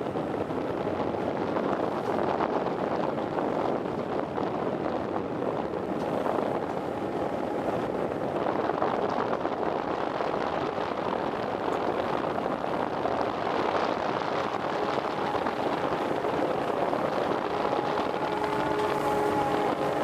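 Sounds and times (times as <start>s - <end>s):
wind on microphone: 0.0s - 20.0s
water rushing: 4.4s - 20.0s.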